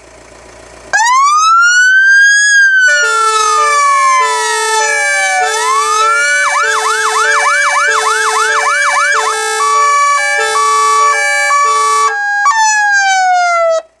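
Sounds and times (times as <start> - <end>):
electronic siren wailing and yelping: 1.0 - 13.9
two-tone air horns: 2.8 - 12.6.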